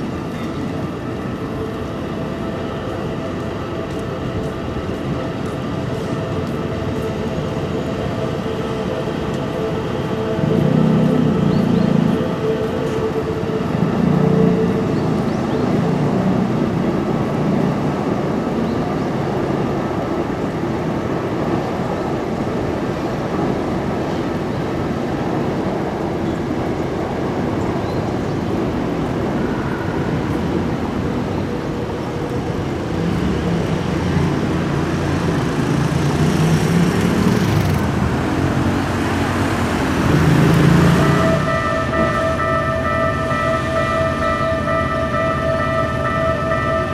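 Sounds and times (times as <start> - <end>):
busy road traffic: 0.0 - 46.9.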